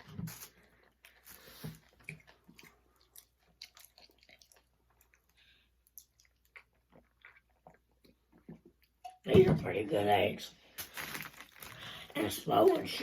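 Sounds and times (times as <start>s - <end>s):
crunching candy chewing: 0.3s - 8.2s.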